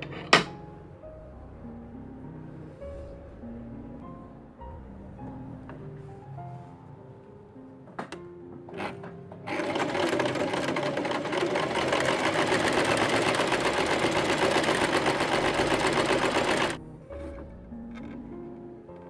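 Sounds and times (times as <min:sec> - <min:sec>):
sewing machine stitching: 0:08.8 - 0:16.8.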